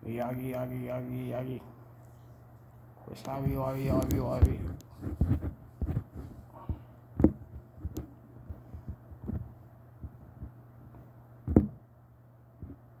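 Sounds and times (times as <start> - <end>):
steady low hum: 0.0 - 13.0
low thumps and knocks: 4.4 - 10.6, 11.4 - 11.8.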